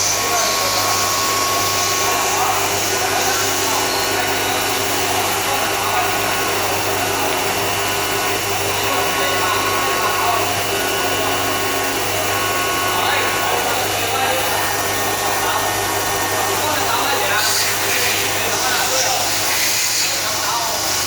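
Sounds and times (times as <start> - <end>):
machining center whirring: 0.0 - 21.0.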